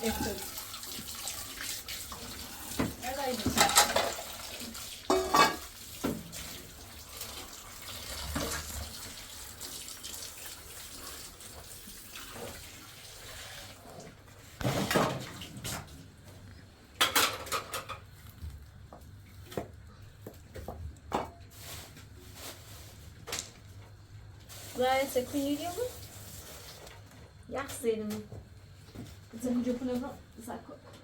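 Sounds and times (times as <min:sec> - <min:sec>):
water running: 0:00.0 - 0:20.7, 0:24.4 - 0:30.8
dishes clattering: 0:03.4 - 0:04.4, 0:05.0 - 0:05.7, 0:17.0 - 0:18.1.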